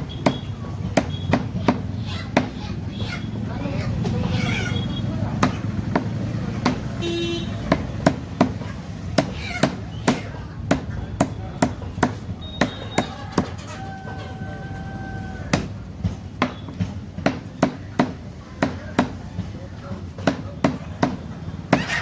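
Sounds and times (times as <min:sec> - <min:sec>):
heavy blade chopping meat: 0:00.1 - 0:02.6, 0:05.4 - 0:13.6, 0:15.5 - 0:22.0.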